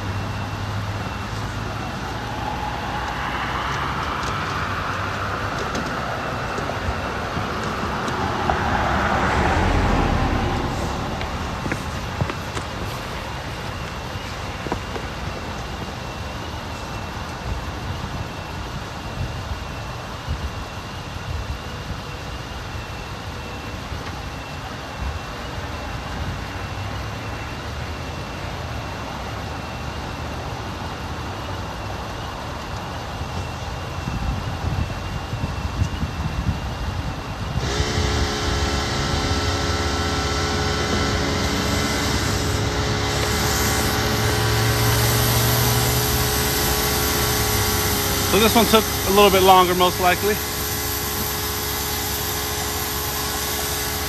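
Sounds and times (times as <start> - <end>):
vehicle passing: 0.0 - 15.0, 37.6 - 54.0
high continuous whine: 0.0 - 54.0
highway traffic rushing: 0.0 - 54.0.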